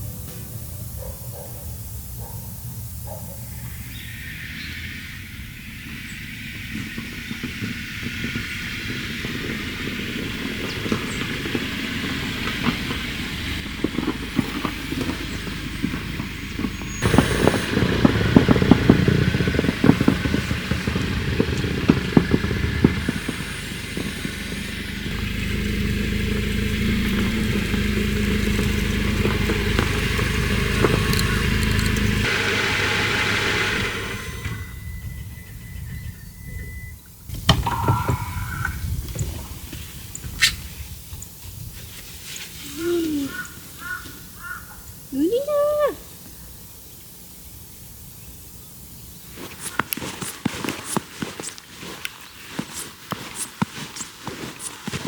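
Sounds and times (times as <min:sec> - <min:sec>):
steady low drone: 0:00.0 - 0:35.8
car road and engine noise: 0:00.0 - 0:45.2, 0:46.2 - 0:55.0
dense rattling and crackling clicks: 0:06.7 - 0:32.6.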